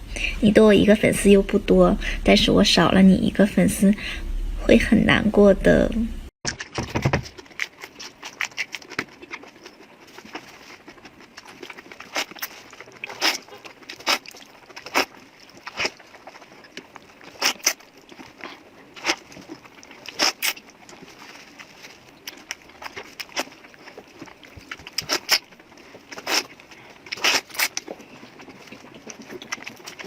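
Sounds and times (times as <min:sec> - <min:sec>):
person chewing food: 0:07.3 - 0:30.0.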